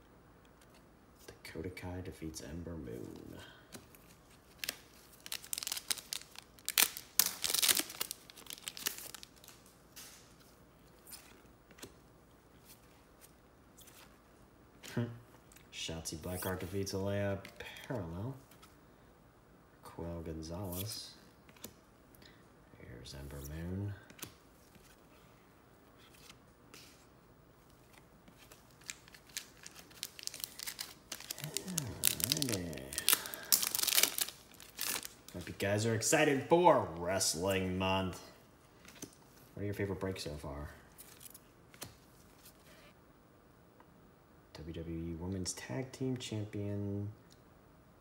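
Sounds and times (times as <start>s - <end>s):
card packaging rustling and crinkling: 3.0s - 12.0s, 27.7s - 37.3s, 40.9s - 42.6s.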